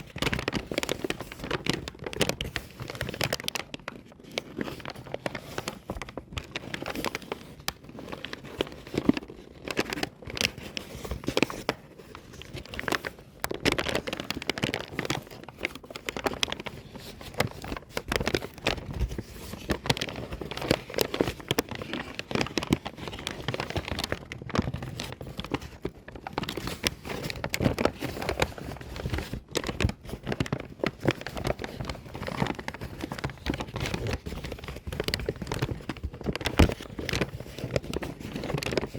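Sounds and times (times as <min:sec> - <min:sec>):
paper bag crumpling: 0:00.0 - 0:38.9.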